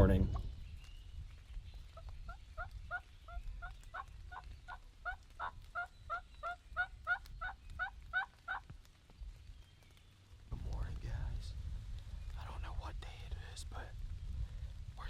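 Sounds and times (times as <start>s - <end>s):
turkey yelping: 2.0s - 8.7s.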